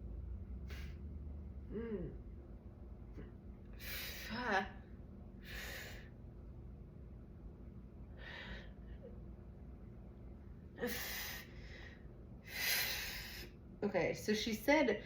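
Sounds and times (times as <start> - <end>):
woman breathing deeply: 3.7 - 4.4, 5.4 - 6.2, 8.1 - 9.1, 10.8 - 13.6.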